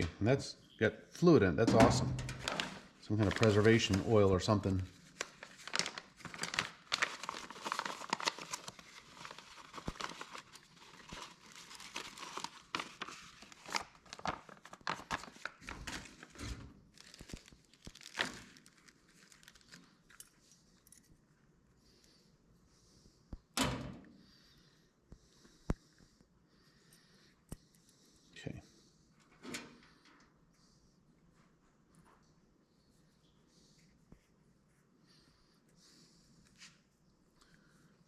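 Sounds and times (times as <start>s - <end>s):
packaging crinkling and rustling: 2.2s - 20.2s.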